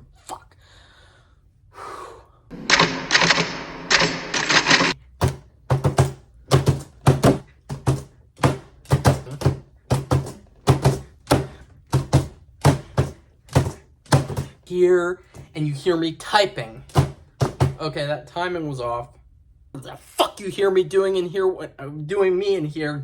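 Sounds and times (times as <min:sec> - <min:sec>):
typewriter keystrokes: 0:02.6 - 0:05.0.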